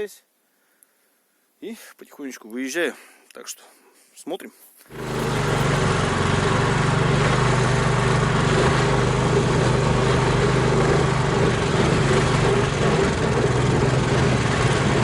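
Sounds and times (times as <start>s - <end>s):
vehicle engine running steadily: 4.9s - 15.0s.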